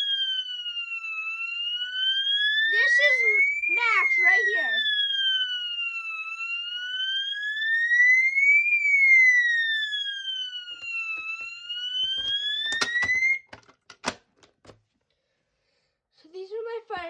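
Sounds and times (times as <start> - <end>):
fire alarm siren wailing: 0.0 - 13.6
clicks: 10.8 - 14.8.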